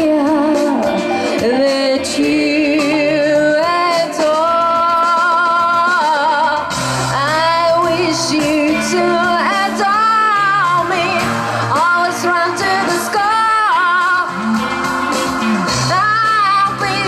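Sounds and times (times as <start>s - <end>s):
female vocal singing: 0.0s - 14.9s, 15.6s - 17.0s
sustained bass notes: 6.8s - 17.0s.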